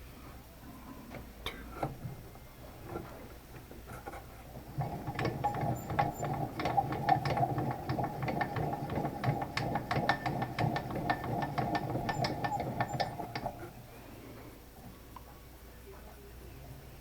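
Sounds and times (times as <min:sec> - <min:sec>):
milling machine hum: 0:04.4 - 0:14.2.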